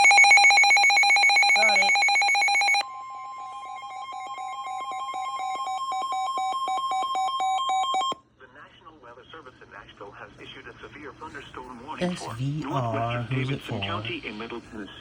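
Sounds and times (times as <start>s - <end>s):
steady single-pitch alarm tone: 0.0s - 8.2s.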